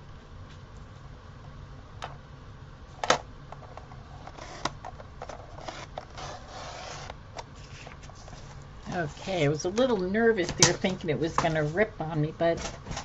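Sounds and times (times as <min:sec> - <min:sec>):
paper rustling and scraping: 0:04.2 - 0:09.5.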